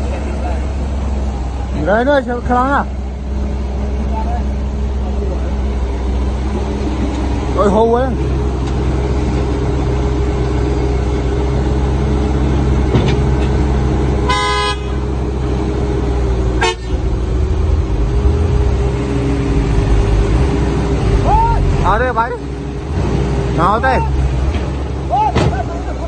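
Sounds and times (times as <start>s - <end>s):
heavy machinery engines with whine: 0.0s - 26.0s
horn toot: 14.2s - 15.1s, 16.6s - 17.2s.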